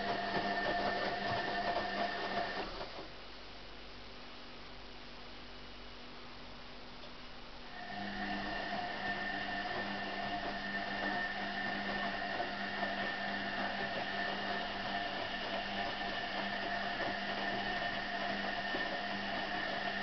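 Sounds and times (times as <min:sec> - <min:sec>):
washing machine humming: 0:00.0 - 0:03.2, 0:07.6 - 0:20.0.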